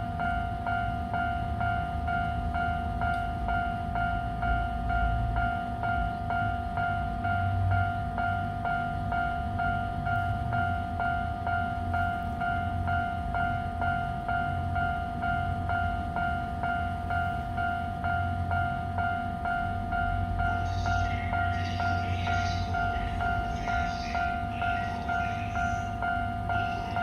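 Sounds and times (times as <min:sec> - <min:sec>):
level crossing warning bell: 0:00.0 - 0:27.0
low steady hum: 0:18.6 - 0:27.0.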